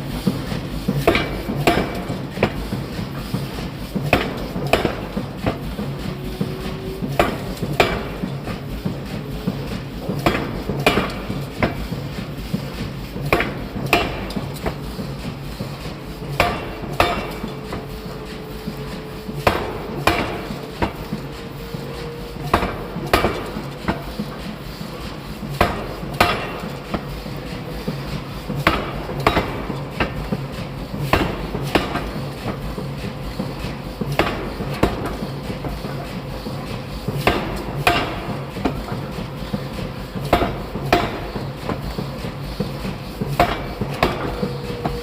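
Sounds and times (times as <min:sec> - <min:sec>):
hammer striking metal: 0:16.4 - 0:17.9, 0:19.4 - 0:21.0, 0:22.5 - 0:24.1.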